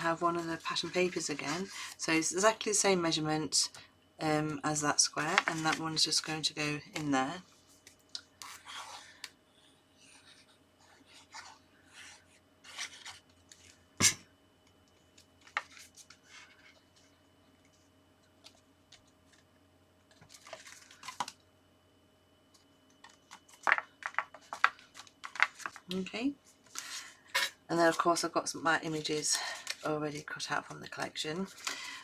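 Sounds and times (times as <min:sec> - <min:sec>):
paper rustling: 0:10.0 - 0:13.8, 0:20.1 - 0:21.4, 0:23.0 - 0:25.9.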